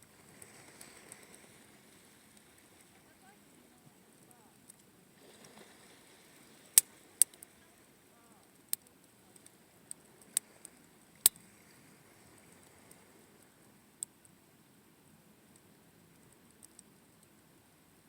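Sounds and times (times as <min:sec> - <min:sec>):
faint low hiss: 0:00.0 - 0:18.0.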